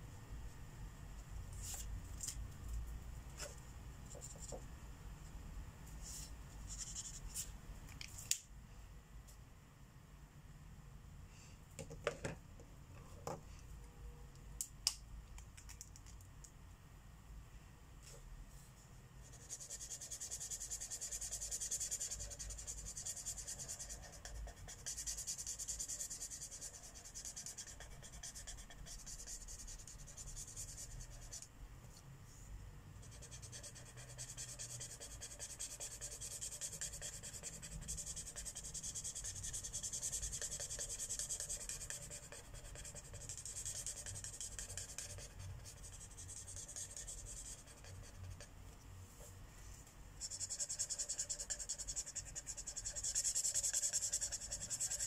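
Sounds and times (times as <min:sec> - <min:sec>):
felt-tip marker rubbing on paper: 0:33.2 - 0:48.4, 0:50.2 - 0:55.0.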